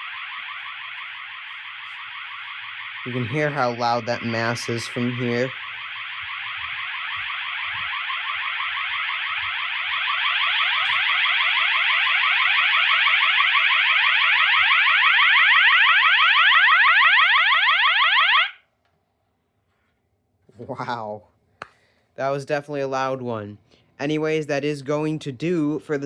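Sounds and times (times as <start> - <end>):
fire alarm horn warbling: 0.0 - 18.6.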